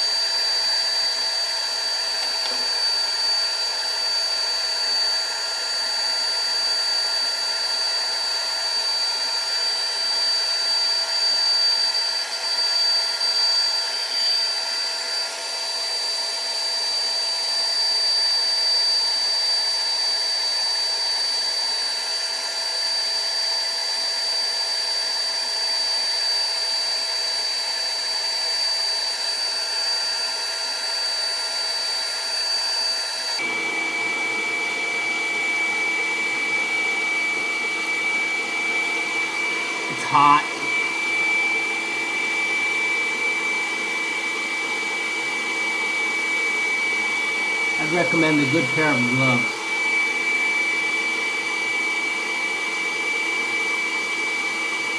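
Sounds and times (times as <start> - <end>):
hot-air blower whooshing and whining: 0.0 - 54.9.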